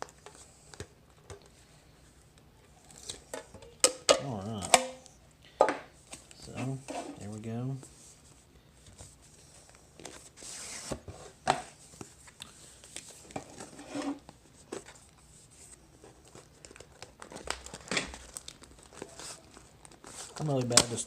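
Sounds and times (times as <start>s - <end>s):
plastic crinkling and tearing: 16.0s - 21.0s.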